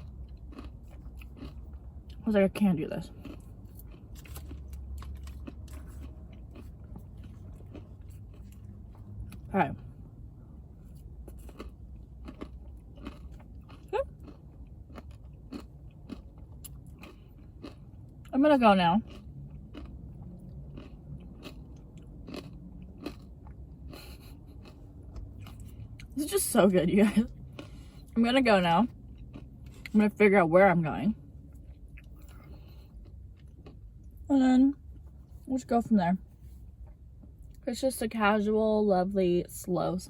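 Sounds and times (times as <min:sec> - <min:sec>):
person chewing with crunches: 0:00.0 - 0:02.3, 0:03.0 - 0:26.3, 0:27.1 - 0:28.2, 0:28.8 - 0:30.0, 0:31.4 - 0:35.5.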